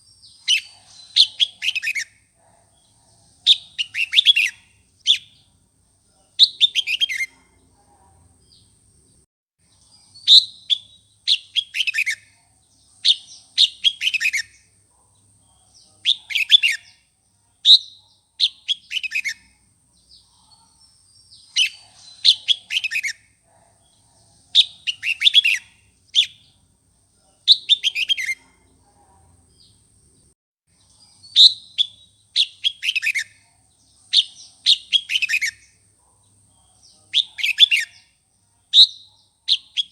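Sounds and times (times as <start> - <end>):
bulbul singing whistled notes: 3.5 - 5.4, 6.4 - 7.3, 10.1 - 12.4, 13.1 - 14.7, 27.5 - 28.4, 31.1 - 33.4, 34.1 - 35.8.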